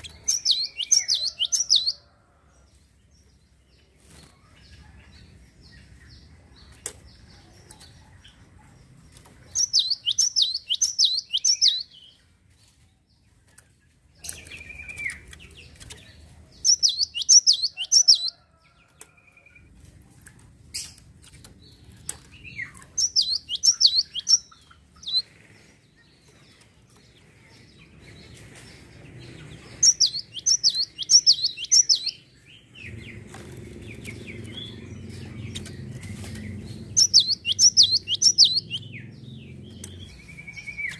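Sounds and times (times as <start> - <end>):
faint low rumble: 32.3 - 40.9.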